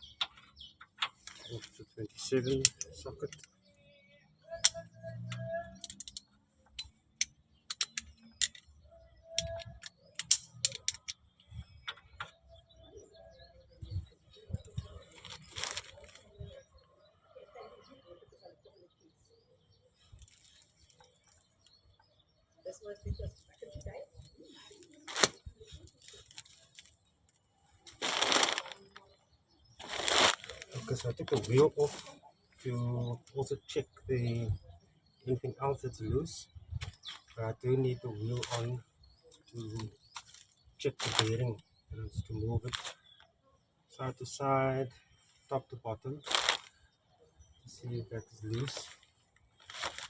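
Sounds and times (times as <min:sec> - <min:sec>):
metallic clicks of hand tools: 0:05.8 - 0:06.2, 0:06.8 - 0:08.7, 0:09.4 - 0:11.2
scraping and rustling: 0:15.0 - 0:16.3, 0:27.9 - 0:29.0, 0:29.8 - 0:32.2, 0:46.3 - 0:46.7, 0:49.6 - 0:50.0.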